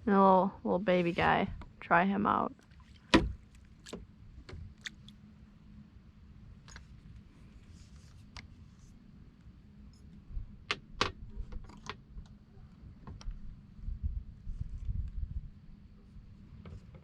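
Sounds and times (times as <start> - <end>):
wind rumble on microphone: 0.0 - 2.1, 10.1 - 17.0.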